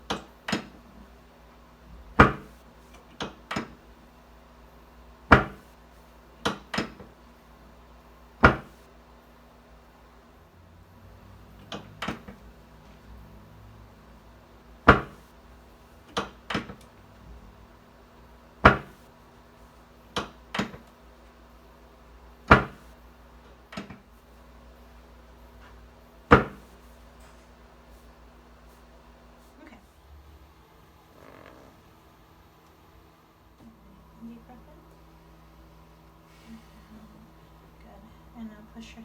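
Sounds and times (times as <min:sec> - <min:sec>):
drop table loud sharp clacks: 0:08.4 - 0:08.8, 0:14.9 - 0:15.3, 0:18.6 - 0:19.0, 0:22.5 - 0:22.9, 0:26.3 - 0:26.8.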